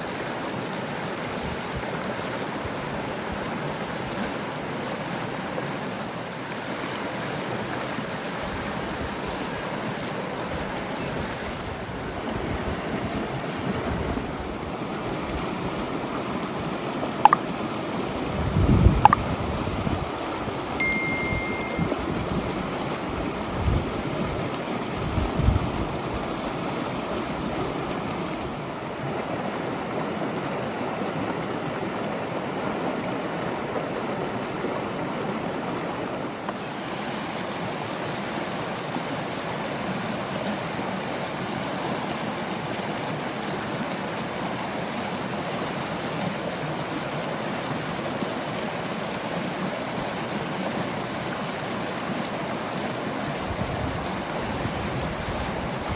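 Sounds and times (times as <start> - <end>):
river water rushing: 0.0 - 55.9
wind buffeting microphone: 10.5 - 20.8, 21.8 - 28.8, 53.4 - 55.9.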